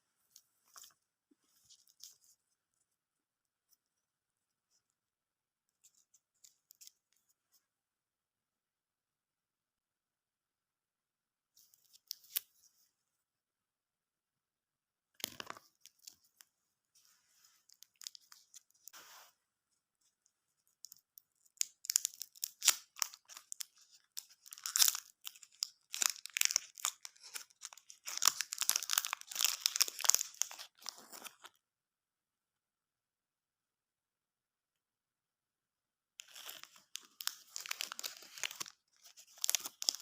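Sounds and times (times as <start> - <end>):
plastic wrapper crinkling: 17.7 - 18.9, 20.8 - 31.5, 36.2 - 40.0.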